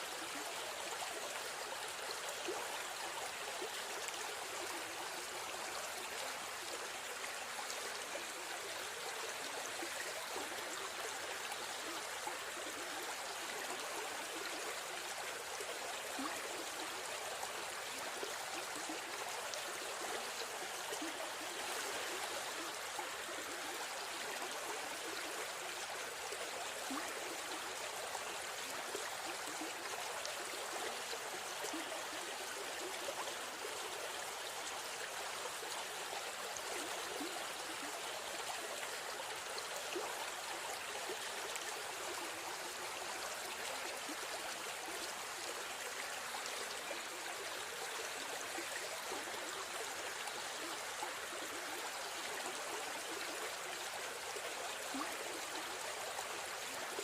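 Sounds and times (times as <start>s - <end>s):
stream flowing over rocks: 0.0s - 57.0s.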